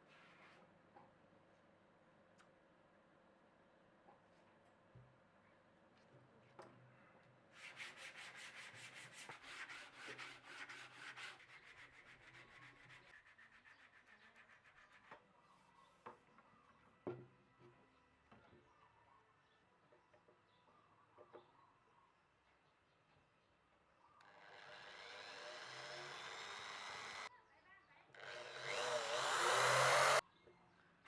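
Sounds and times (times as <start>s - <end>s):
rapid scraping strokes on wood: 28.2s - 30.2s.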